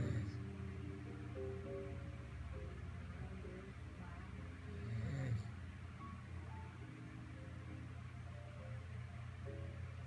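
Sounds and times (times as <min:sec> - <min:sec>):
pet snoring: 0:00.0 - 0:00.4, 0:04.8 - 0:05.6
soft background music: 0:00.0 - 0:10.0.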